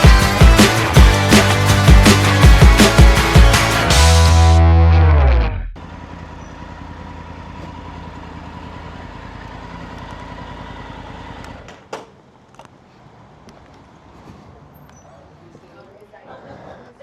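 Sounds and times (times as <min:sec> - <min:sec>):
motorcycle engine idling: 0:05.8 - 0:11.7.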